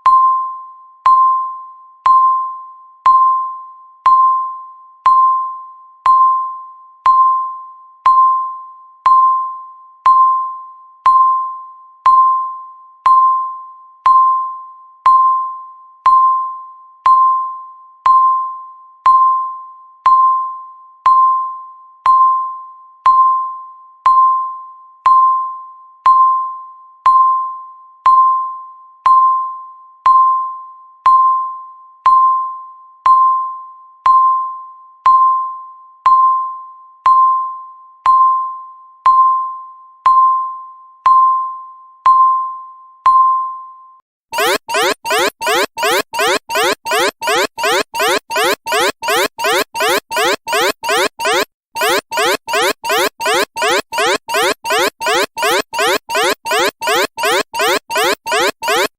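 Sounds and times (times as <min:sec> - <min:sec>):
countdown timer beeping: 0:44.4 - 0:58.9.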